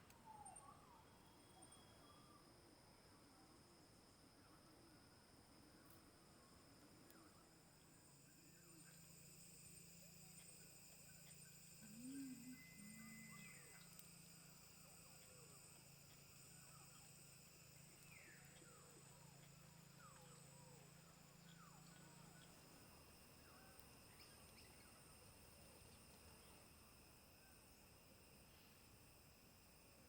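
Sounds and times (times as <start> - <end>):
insect drone: 0.1 - 30.0
high held insect tones: 7.5 - 30.0.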